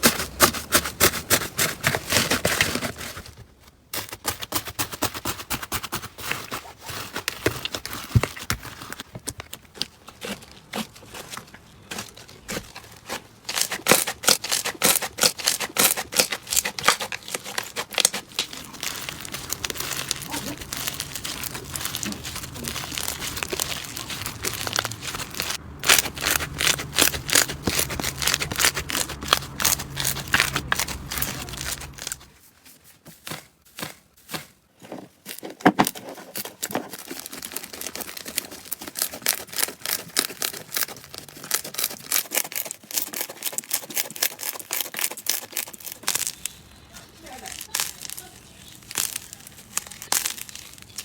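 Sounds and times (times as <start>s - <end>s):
slime squeezed crackling: 8.9s - 32.3s, 36.5s - 51.0s.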